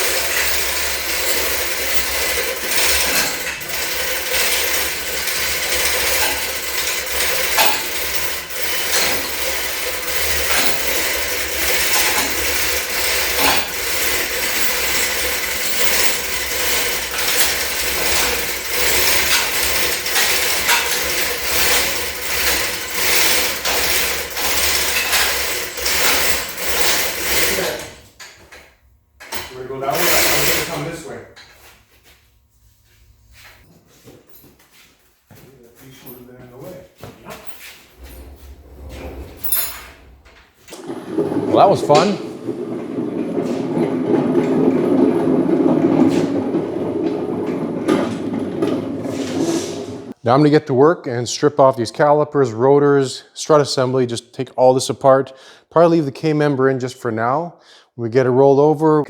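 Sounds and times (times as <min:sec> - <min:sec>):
hand tools and ratchets clattering: 0:00.0 - 0:28.6, 0:29.2 - 0:31.6, 0:35.8 - 0:49.9.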